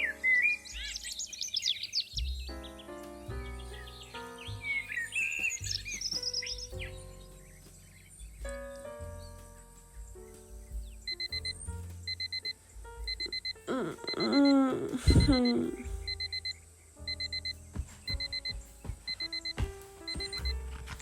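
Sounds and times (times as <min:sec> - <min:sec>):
soft background music: 0:00.0 - 0:21.0
alarm clock beeping: 0:11.1 - 0:20.7.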